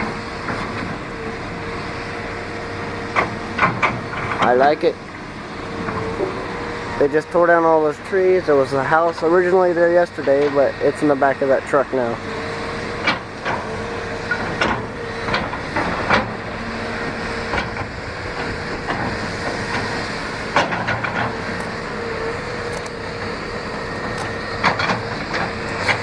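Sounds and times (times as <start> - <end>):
heavy machinery whining: 0.0 - 26.0.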